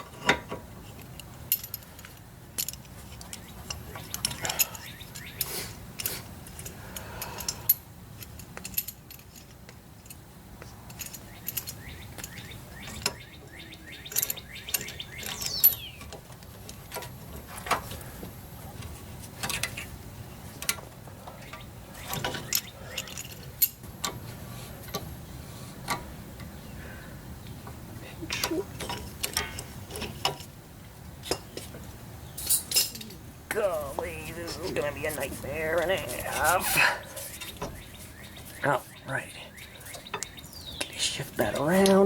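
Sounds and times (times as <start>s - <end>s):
metallic clinks and scrapes: 0.2s - 10.2s, 10.9s - 13.2s, 22.0s - 23.8s, 32.4s - 38.6s.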